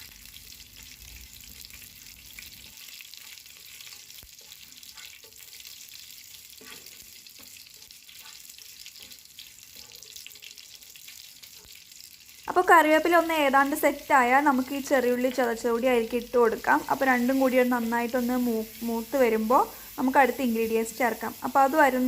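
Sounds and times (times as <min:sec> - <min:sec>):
leaves sizzling in hot oil: 0:00.0 - 0:22.0.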